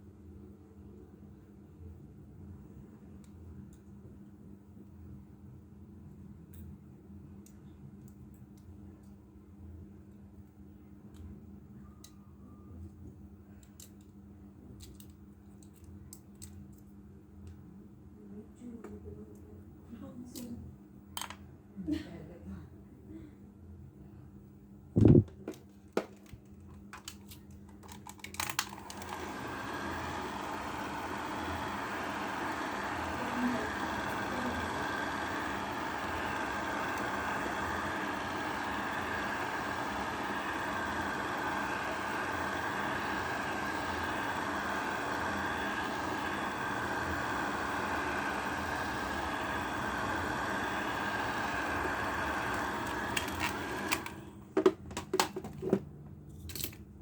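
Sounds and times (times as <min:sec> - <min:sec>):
hair dryer running: 0:28.8 - 0:54.2.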